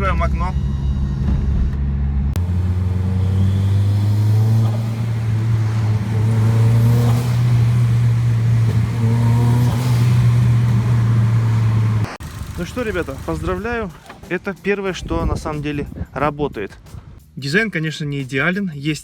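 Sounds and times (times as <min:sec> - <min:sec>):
car engine accelerating: 0:01.7 - 0:14.0.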